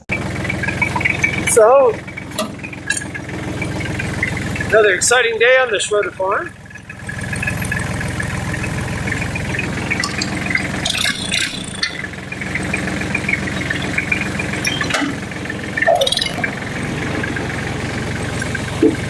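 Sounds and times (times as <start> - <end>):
tractor engine running: 0.0 - 19.0
brief rattle: 2.2 - 5.7.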